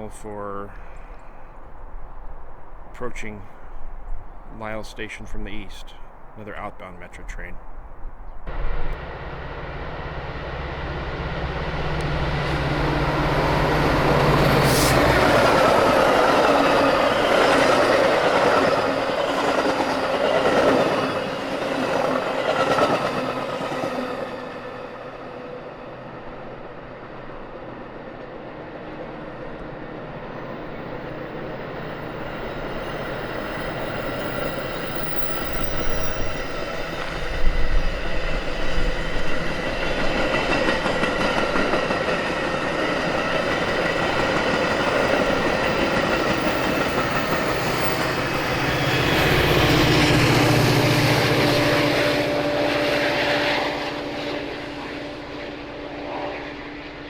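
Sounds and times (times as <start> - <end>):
train passing: 0.0 - 57.0
steady hum: 8.5 - 15.2
wheels clattering over rails: 39.2 - 52.2.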